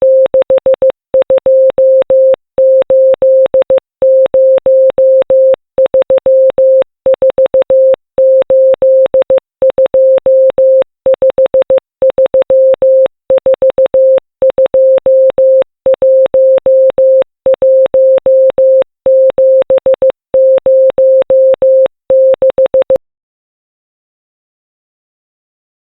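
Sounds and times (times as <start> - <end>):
electronic tone in morse code: 0.0 - 23.0.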